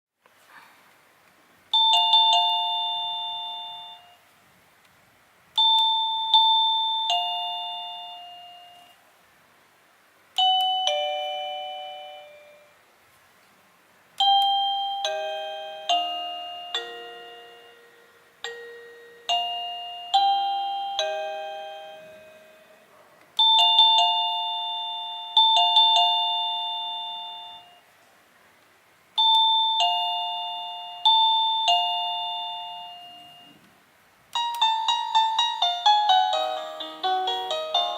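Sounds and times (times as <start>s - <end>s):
doorbell chime tunes: 1.7s - 4.3s, 5.6s - 9.0s, 10.4s - 12.8s, 14.2s - 22.8s, 23.4s - 27.9s, 29.2s - 33.6s, 34.4s - 37.9s.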